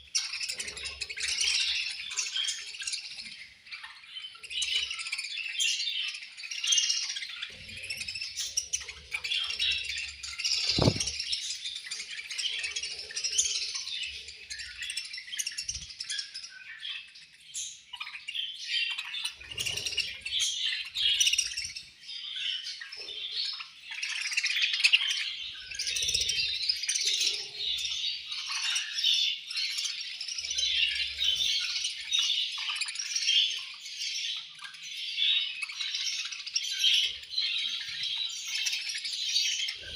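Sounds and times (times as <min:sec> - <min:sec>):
budgerigars chattering and chirping: 0:00.0 - 0:39.9
low thump: 0:10.7 - 0:11.2.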